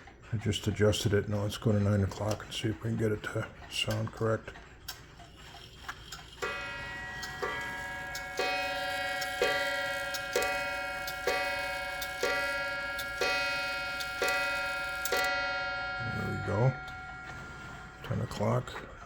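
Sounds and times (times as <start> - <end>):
clock ticking: 0.0 - 19.0
clock gong striking: 6.4 - 18.8.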